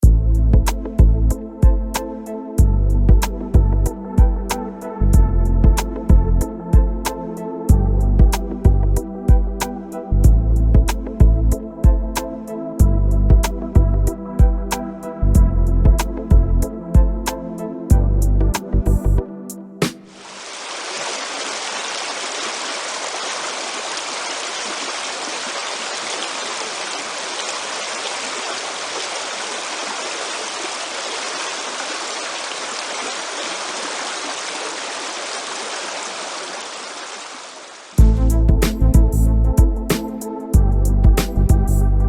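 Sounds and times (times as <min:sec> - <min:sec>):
stream water rushing: 0:19.9 - 0:38.0.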